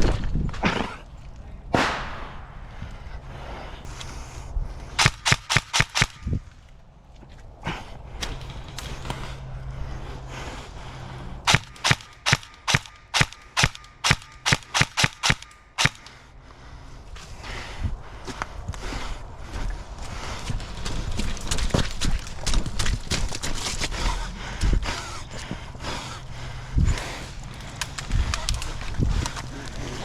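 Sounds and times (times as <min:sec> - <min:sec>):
airsoft gun firing single shots: 0:05.0 - 0:06.4, 0:11.5 - 0:16.3.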